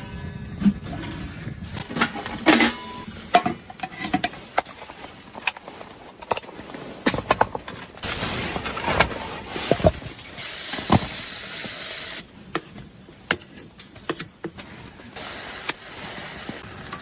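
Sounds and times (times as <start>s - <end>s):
low rumble: 0.0s - 3.1s.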